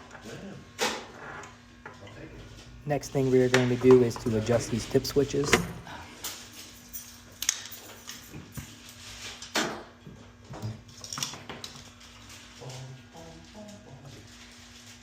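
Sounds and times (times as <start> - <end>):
steady low hum: 2.0 - 7.0.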